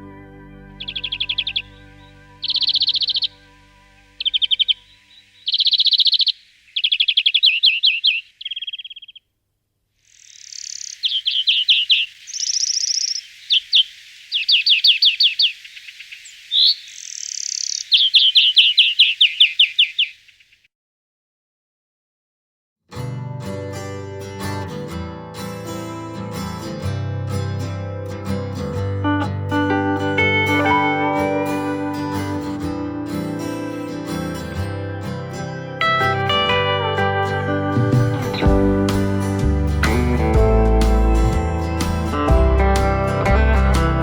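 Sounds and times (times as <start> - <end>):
background music: 0.0 - 5.2, 23.2 - 44.0
finch twittering trills: 0.8 - 9.2, 10.2 - 20.7.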